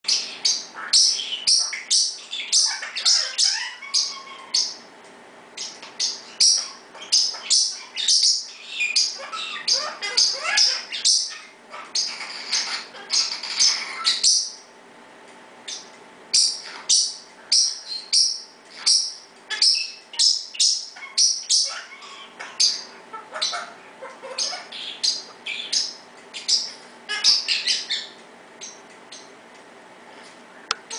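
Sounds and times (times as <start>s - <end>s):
parrot calling: 0.1s - 4.9s, 5.6s - 14.6s, 15.7s - 29.3s
parrot high-pitched chirps: 0.1s - 4.9s, 5.6s - 14.6s, 15.7s - 29.3s
parrots mimicking laughter: 0.8s - 4.6s, 7.7s - 14.3s, 20.9s - 25.8s, 27.0s - 28.1s.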